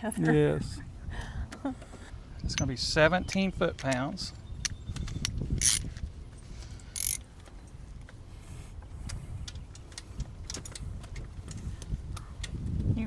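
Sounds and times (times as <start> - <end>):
metallic tool clicks and clinks: 2.4 - 6.1, 6.8 - 7.2
ratchet rasping: 4.6 - 7.2.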